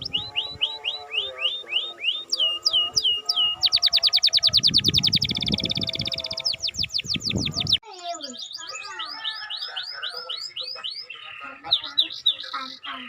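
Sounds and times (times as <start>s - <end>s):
canary singing: 0.0s - 13.0s.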